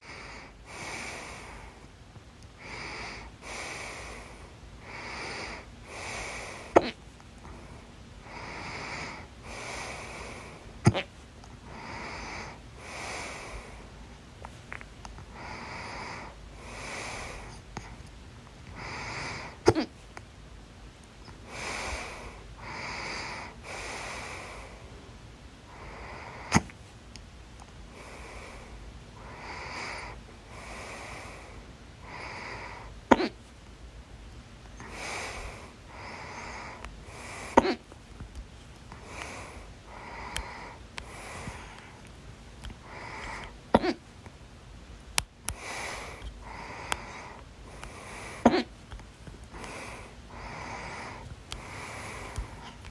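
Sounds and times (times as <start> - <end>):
person breathing: 0.0 - 1.9, 2.6 - 14.0, 15.3 - 18.1, 18.7 - 19.6, 21.2 - 25.0, 25.7 - 26.7, 27.9 - 33.3, 34.8 - 37.8, 38.9 - 42.1, 42.7 - 44.0, 45.5 - 48.7, 49.5 - 52.9
person hiccuping: 19.6 - 19.9, 33.1 - 33.4, 37.6 - 37.8, 43.7 - 44.0, 48.4 - 48.7.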